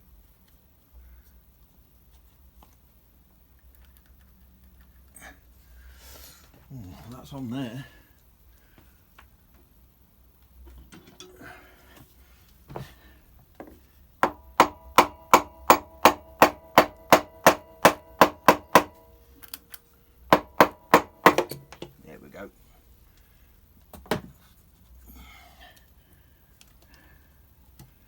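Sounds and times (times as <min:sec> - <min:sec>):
hammer tapping on metal cover: 0:14.2 - 0:19.2, 0:20.3 - 0:22.0.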